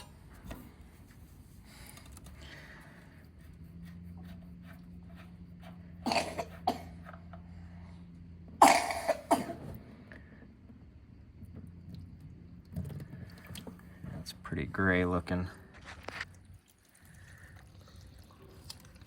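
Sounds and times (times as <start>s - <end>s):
person coughing: 6.0s - 7.0s, 8.6s - 9.7s.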